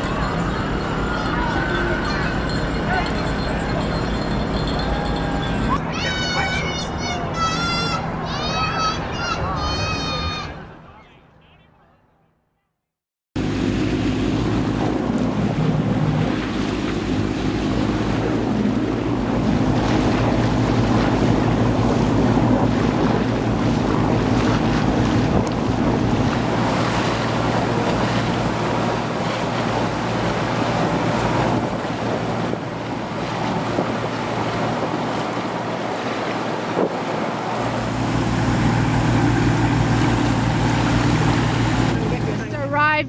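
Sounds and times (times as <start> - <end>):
wind buffeting microphone: 0.0 - 10.6, 13.7 - 43.0
low engine hum: 0.0 - 10.8, 13.4 - 43.0
water rushing past: 13.4 - 42.7.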